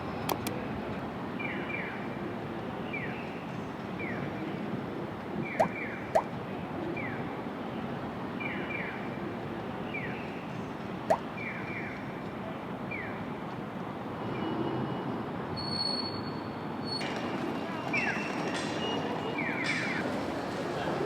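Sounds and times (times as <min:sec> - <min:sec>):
sharp clicks: 0:00.2 - 0:00.6.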